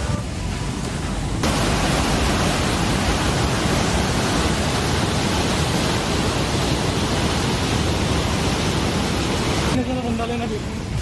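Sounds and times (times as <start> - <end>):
waterfall rushing: 1.4 - 10.1.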